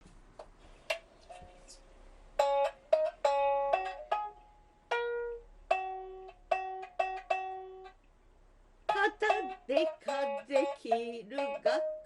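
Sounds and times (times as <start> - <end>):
plucked lute notes: 2.4 - 8.2, 8.8 - 12.0.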